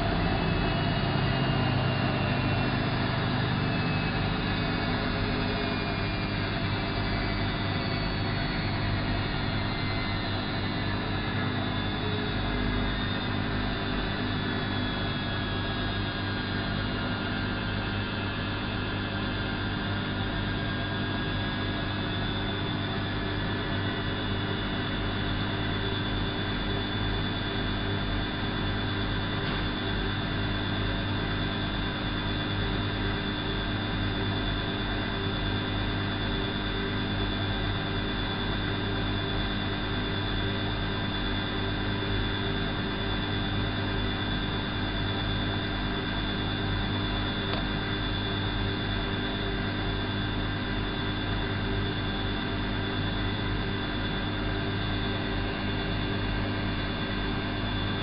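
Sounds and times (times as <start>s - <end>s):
washing machine motor humming: 0.0s - 18.6s.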